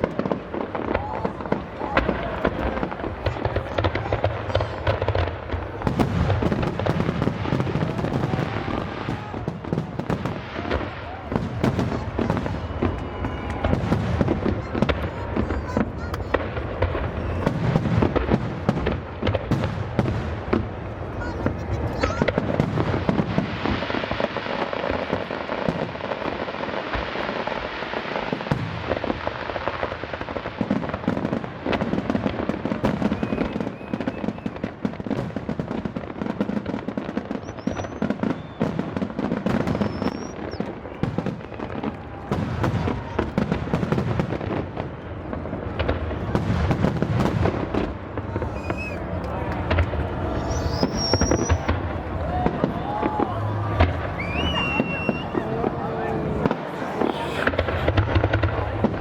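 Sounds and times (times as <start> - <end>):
fireworks bangs and crackling: 0.0 - 59.0
firework whistles: 7.2 - 16.4, 32.7 - 34.9, 37.0 - 41.9, 48.3 - 49.1, 50.3 - 51.8, 53.8 - 55.5, 56.7 - 58.5.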